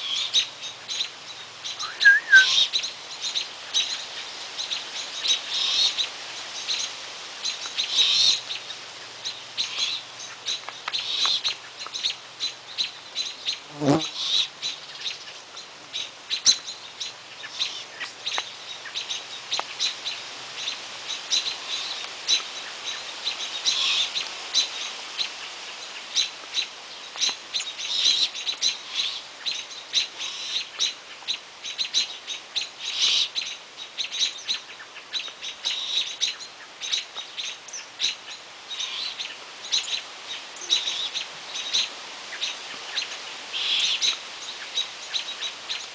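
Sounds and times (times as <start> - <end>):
brief rising sound: 1.8 - 2.5
small birds chirping: 1.8 - 2.6.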